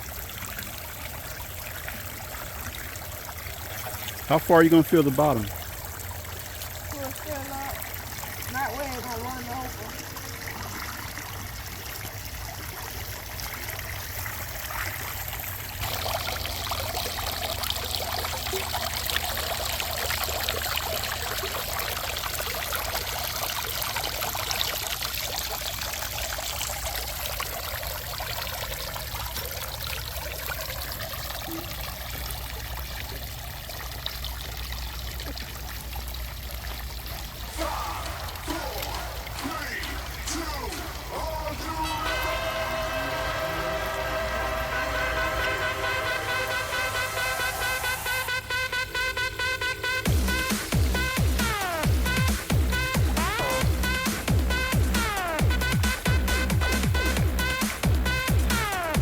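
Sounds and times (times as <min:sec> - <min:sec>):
fountain water splashing: 0:00.0 - 0:59.0.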